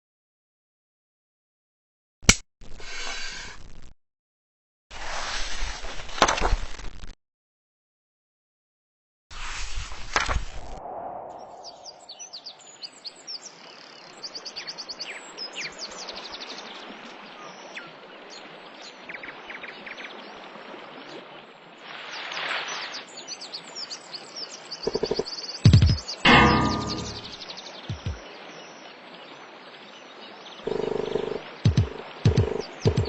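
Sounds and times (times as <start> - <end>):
birds chirping and trilling: 11.4 - 14.5, 30.6 - 33.0
knocks: 25.8 - 27.3, 31.2 - 33.0.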